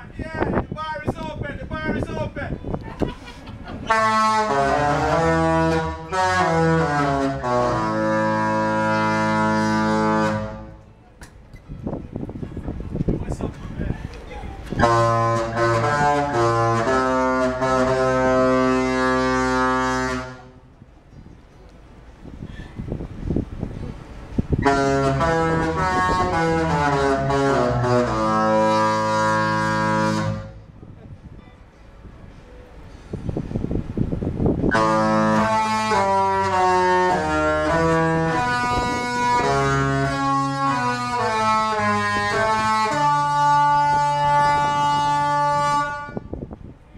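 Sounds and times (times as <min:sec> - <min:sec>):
ship horns playing a tune: 0:03.7 - 0:10.9, 0:14.6 - 0:20.8, 0:22.1 - 0:31.0, 0:33.3 - 0:46.7.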